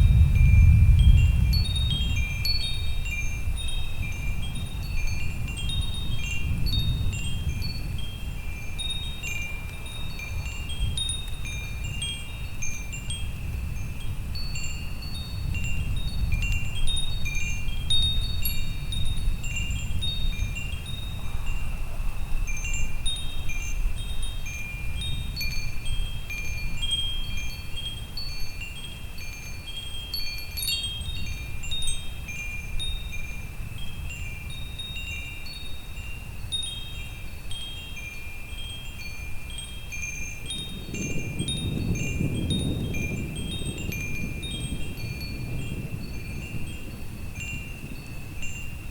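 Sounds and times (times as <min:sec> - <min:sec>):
thunderstorm rumble: 0:00.0 - 0:03.0, 0:40.6 - 0:48.3
wind chimes ringing: 0:00.0 - 0:48.9.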